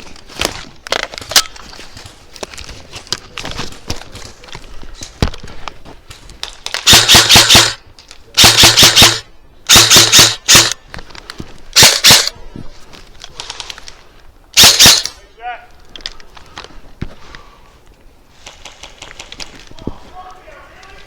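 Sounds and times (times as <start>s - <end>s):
airsoft gun rapid shots: 6.8s - 7.8s, 8.4s - 10.8s, 11.8s - 12.3s, 14.6s - 15.1s.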